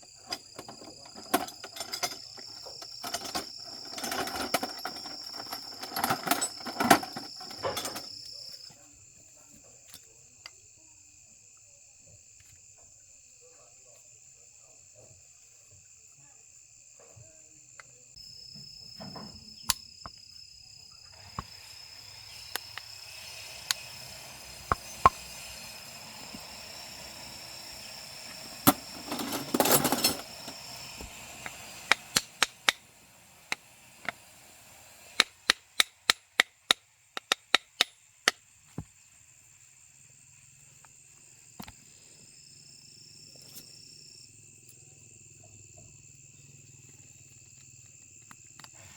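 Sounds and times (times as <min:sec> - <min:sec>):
insects chirring: 0:00.0 - 0:48.9
clattering knocks: 0:00.2 - 0:08.2, 0:28.3 - 0:30.6.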